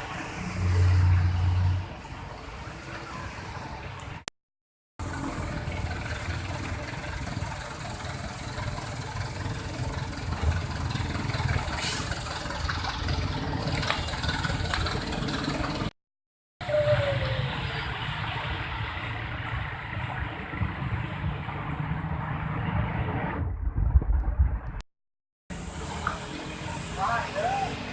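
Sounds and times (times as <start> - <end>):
vehicle engines idling in traffic: 0.0 - 4.3, 5.0 - 15.9, 16.6 - 23.1, 25.5 - 27.9.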